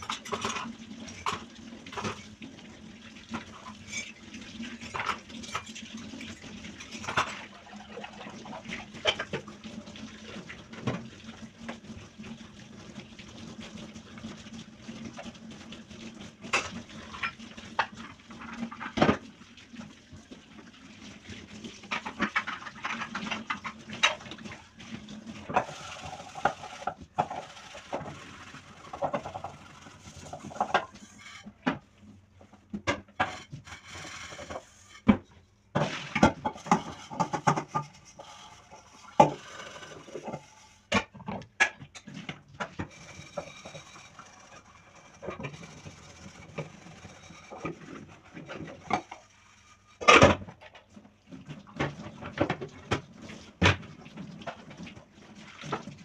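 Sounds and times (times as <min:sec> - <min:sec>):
water running: 0:00.0 - 0:40.9.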